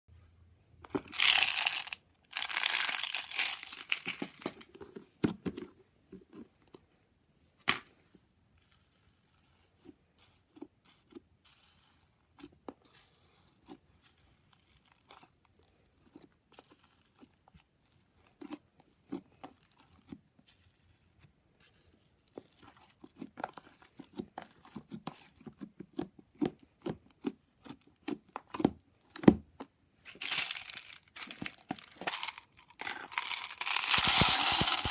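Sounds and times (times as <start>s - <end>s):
sticky clicks and pops: 33.6s - 34.9s.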